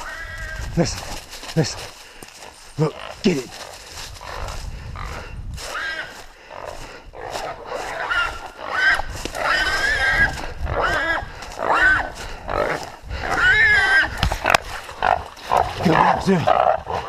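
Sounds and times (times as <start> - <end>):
hog squealing: 0.0 - 0.8, 7.7 - 12.6.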